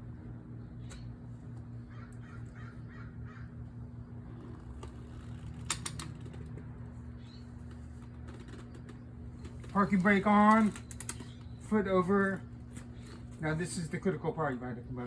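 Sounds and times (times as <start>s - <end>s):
steady low hum: 0.0s - 15.0s
harsh bird calls: 1.8s - 4.2s.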